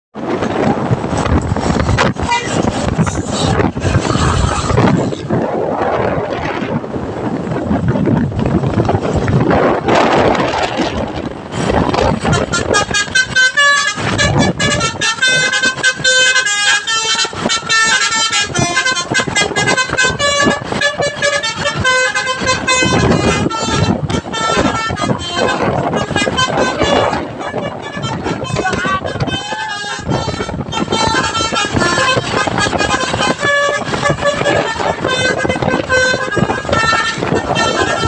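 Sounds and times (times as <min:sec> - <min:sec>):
bus engine and road noise: 0:00.1 - 0:38.0
musical horn tooting melody: 0:01.1 - 0:05.4, 0:12.1 - 0:38.0.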